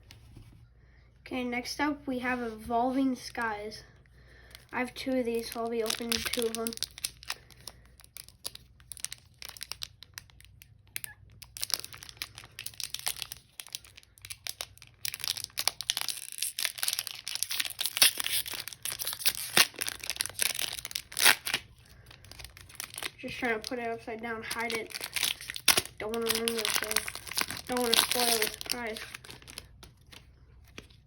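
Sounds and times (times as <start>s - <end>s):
foil wrapper crinkling and tearing: 4.4s - 31.0s.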